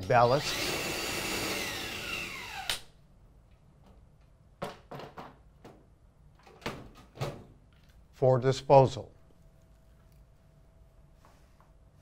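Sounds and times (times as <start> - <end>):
power drill spinning down: 0.2 - 2.8.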